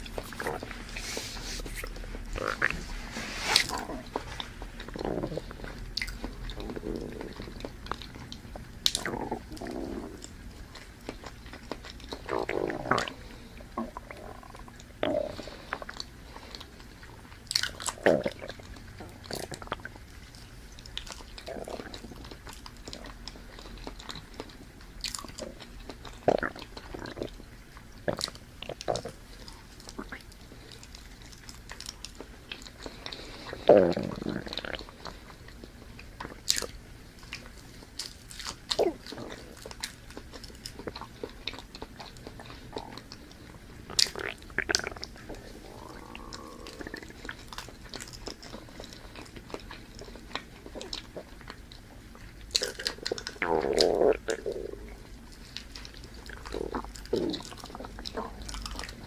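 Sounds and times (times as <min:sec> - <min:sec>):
throaty vocal sounds: 0:00.0 - 0:07.6, 0:43.8 - 0:47.4, 0:52.8 - 0:55.0
person chewing banana: 0:00.0 - 0:59.0.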